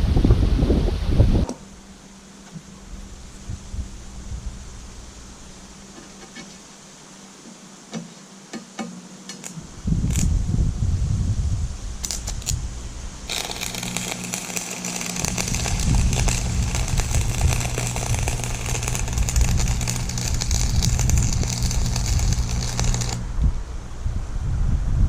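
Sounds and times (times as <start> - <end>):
low hum: 0.0 - 7.0, 9.4 - 25.0
welding arc crackling: 9.3 - 10.6, 11.8 - 23.7.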